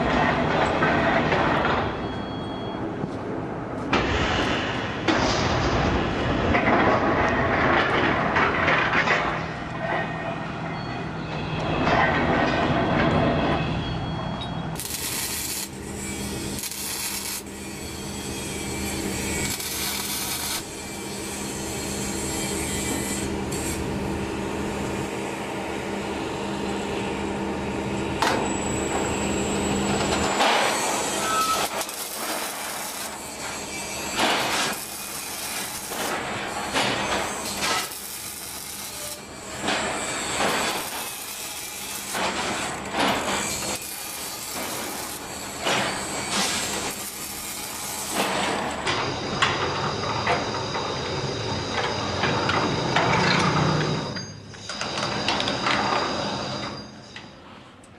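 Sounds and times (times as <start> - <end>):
machine mechanical hum: 0.0 - 57.9
steel bars scraping and rattling: 30.2 - 50.2.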